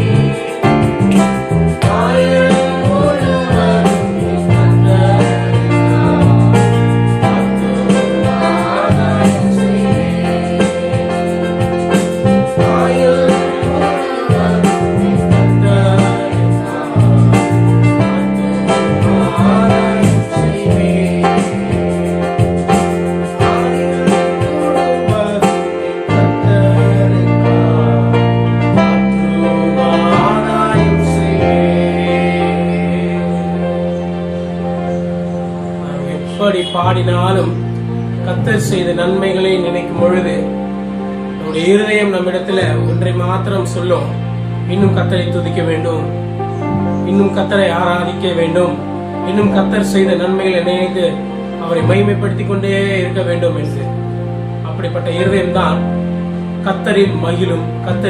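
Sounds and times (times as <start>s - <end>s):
voices singing: 0.0s - 53.9s
keyboard chords: 0.0s - 58.0s
steady bass: 0.0s - 58.0s.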